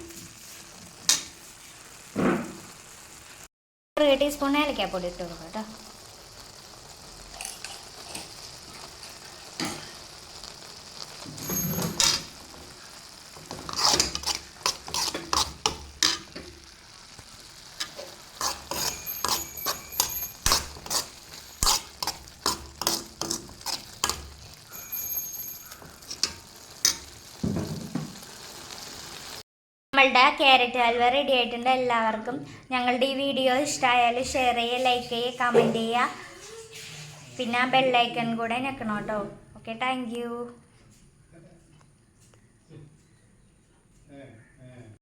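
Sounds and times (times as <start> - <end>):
faint sizzle: 0.0 - 29.4, 30.0 - 40.8
spoon scraping a pan: 7.3 - 10.5, 11.2 - 16.7, 17.7 - 27.4.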